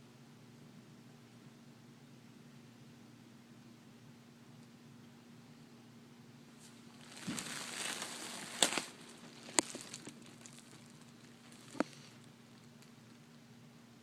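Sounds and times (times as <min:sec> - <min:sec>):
faint steady hum: 0:00.0 - 0:14.0
crinkling rustle: 0:06.6 - 0:13.2.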